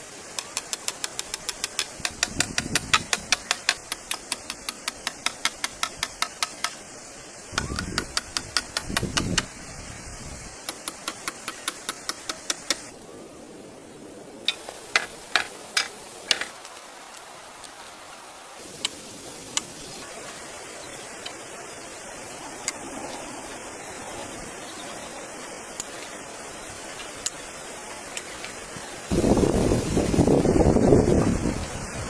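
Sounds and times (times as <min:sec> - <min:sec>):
rapid hammering: 0:00.4 - 0:06.8, 0:07.6 - 0:09.5, 0:10.7 - 0:12.9.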